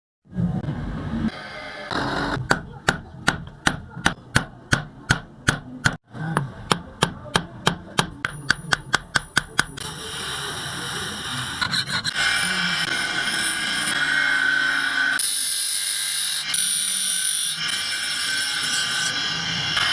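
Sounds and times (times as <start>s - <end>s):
metal grinding: 7.6s - 19.9s.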